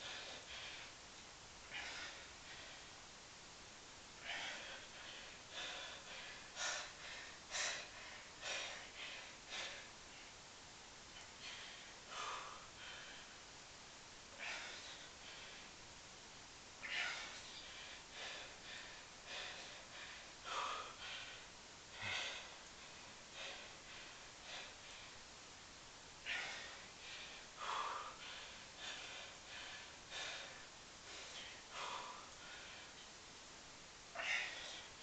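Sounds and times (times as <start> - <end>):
man breathing hard: 0.0 - 3.2, 4.0 - 10.4, 11.1 - 15.9, 16.8 - 25.4, 26.1 - 33.2, 34.0 - 35.0.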